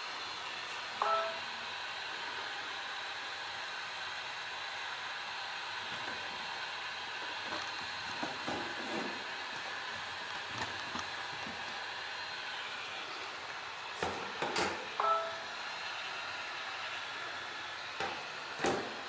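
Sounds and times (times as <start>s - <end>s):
heat gun blowing: 0.0s - 19.0s
short beep-like tone: 1.0s - 1.4s, 15.0s - 15.5s.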